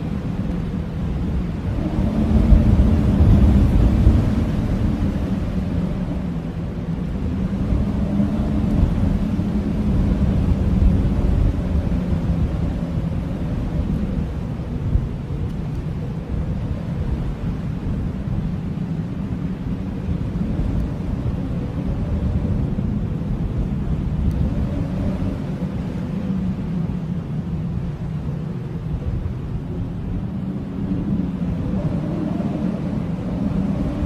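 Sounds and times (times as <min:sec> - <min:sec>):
blizzard wind rushing: 0:00.0 - 0:34.0
faint howling wind tone: 0:00.0 - 0:34.0.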